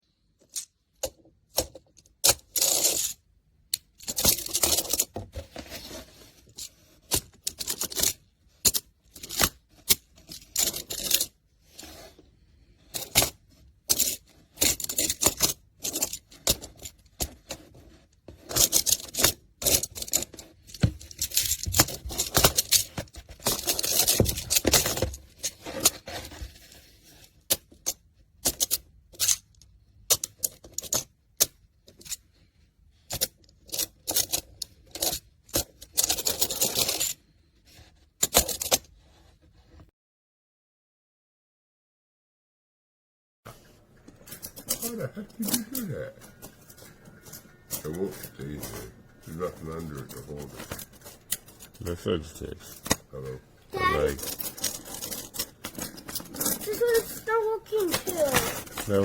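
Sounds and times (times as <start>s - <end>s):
plastic pieces clattering and clicking: 6.4s - 11.3s, 12.9s - 17.6s, 18.4s - 26.7s, 44.2s - 59.0s.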